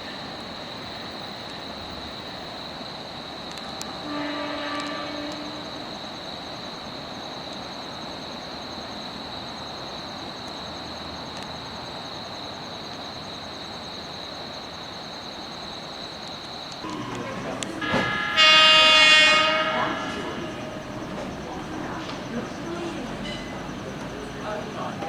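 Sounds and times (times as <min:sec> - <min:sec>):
high-pitched insect trill: 0:00.0 - 0:25.0
short low tone: 0:16.8 - 0:18.4.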